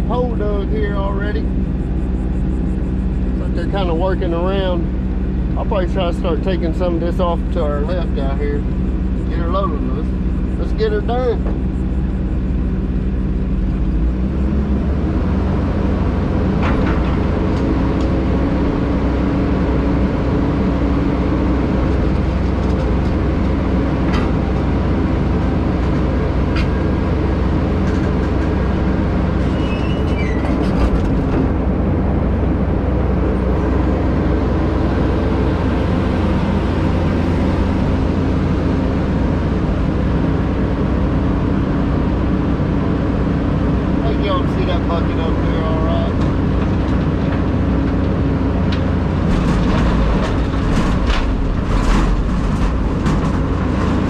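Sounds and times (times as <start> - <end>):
excavator diesel engine running: 0.0 - 54.0.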